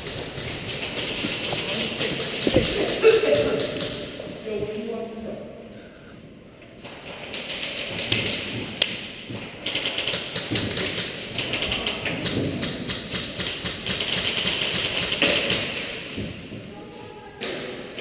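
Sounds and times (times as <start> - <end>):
airsoft gun firing bursts: 0.0 - 4.2, 7.0 - 16.2.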